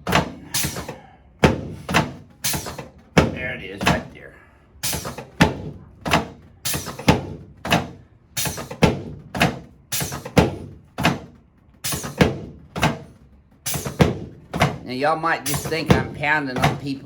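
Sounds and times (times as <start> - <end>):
chiropractic table slamming down: 11.9 - 14.8.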